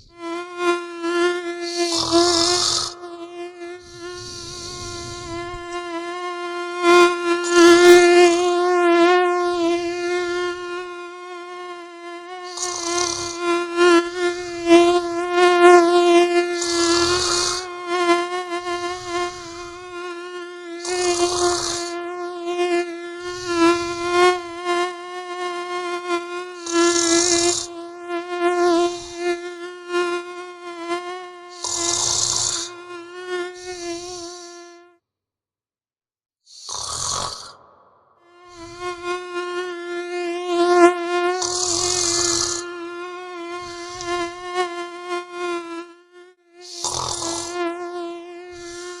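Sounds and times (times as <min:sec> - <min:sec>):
mosquito whine: 0:00.0 - 0:35.0, 0:36.5 - 0:49.0
person snoring: 0:01.6 - 0:03.0, 0:03.8 - 0:05.9, 0:12.4 - 0:15.0, 0:16.4 - 0:17.7, 0:18.6 - 0:20.0, 0:20.8 - 0:22.0, 0:23.2 - 0:24.6, 0:26.6 - 0:27.8, 0:28.8 - 0:29.5, 0:31.5 - 0:32.8, 0:33.5 - 0:34.6, 0:36.5 - 0:39.0, 0:41.3 - 0:42.7, 0:43.6 - 0:44.4, 0:46.6 - 0:47.6, 0:48.5 - 0:49.0.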